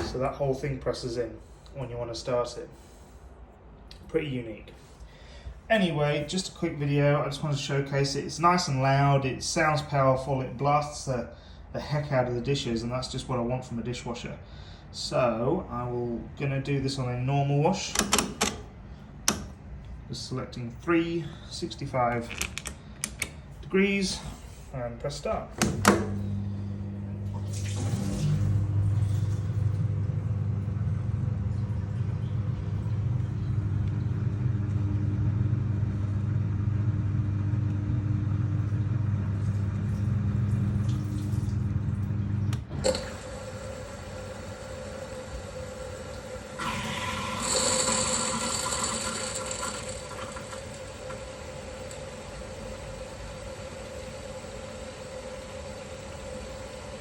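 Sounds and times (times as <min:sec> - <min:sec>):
quiet steady whine: 0:00.0 - 0:57.0
pump motor humming: 0:25.6 - 0:57.0.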